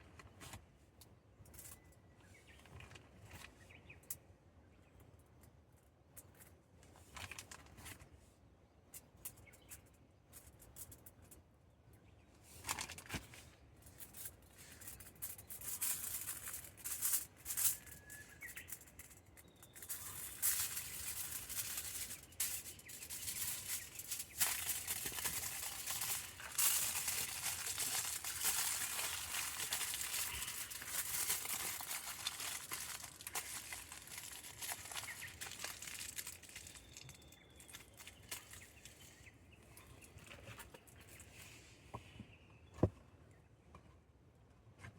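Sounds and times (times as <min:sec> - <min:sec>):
rustling: 0:12.5 - 0:41.6
campfire crackling: 0:19.8 - 0:38.6.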